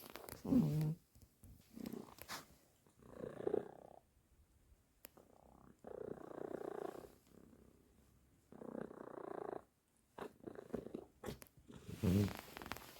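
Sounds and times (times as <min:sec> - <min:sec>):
cat snoring: 0:08.5 - 0:12.8.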